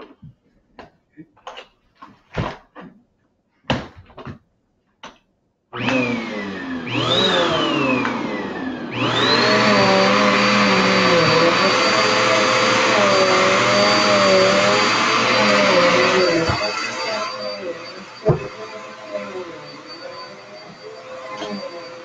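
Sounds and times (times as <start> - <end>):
vacuum cleaner motor whine: 5.8 - 22.0.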